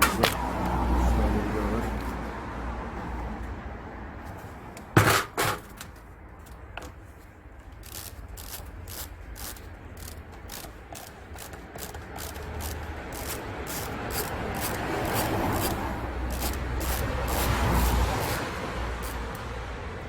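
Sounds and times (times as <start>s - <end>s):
loud sharp metal knocks: 5.0s - 5.8s
regular scraping stroke: 7.8s - 19.3s.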